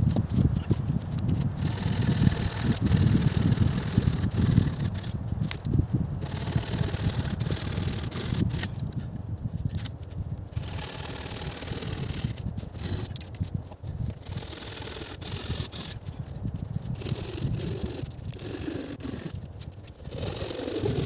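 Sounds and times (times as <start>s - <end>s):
rubbing and scraping: 0.0s - 21.0s
sharp clicks: 0.1s - 16.2s.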